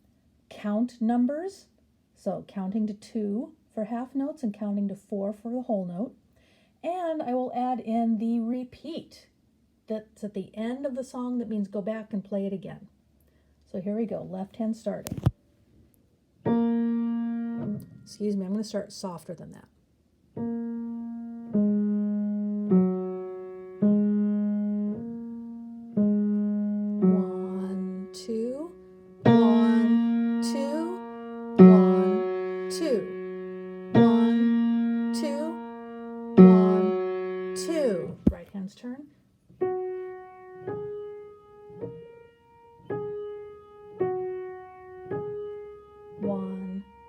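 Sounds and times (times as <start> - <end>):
soft piano notes: 16.4 - 18.6, 20.4 - 38.5, 39.5 - 47.0.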